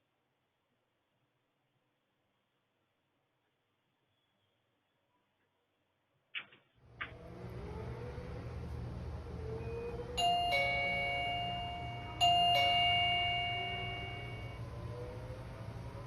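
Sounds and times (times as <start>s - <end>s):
low steady hum: 6.8s - 16.0s
two-note doorbell chime: 10.2s - 14.7s.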